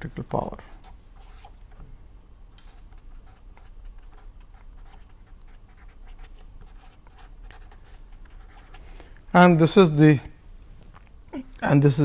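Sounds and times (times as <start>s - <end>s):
pen scratching on paper: 0.8s - 1.6s, 2.7s - 8.8s.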